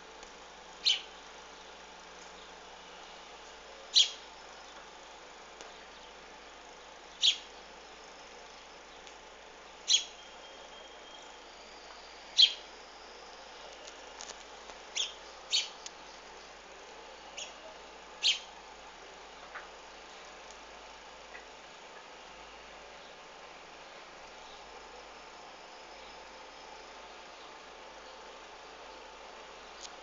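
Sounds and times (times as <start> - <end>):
sharp bird chirps: 0.8 - 1.1, 9.9 - 11.4, 12.4 - 12.6, 18.2 - 18.5.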